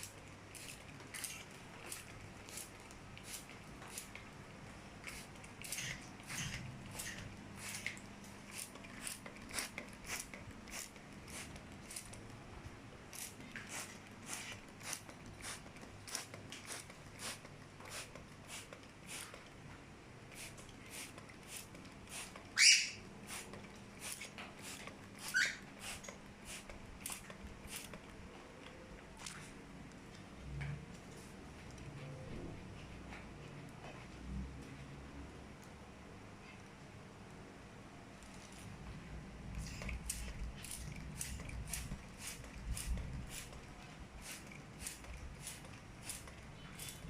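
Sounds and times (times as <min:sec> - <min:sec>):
cockatiel chirps: 0:22.6 - 0:23.0, 0:25.3 - 0:25.6.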